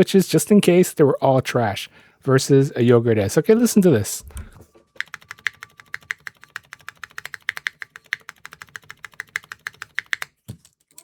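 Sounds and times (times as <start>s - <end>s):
mechanical keyboard clacking: 4.3s - 11.0s.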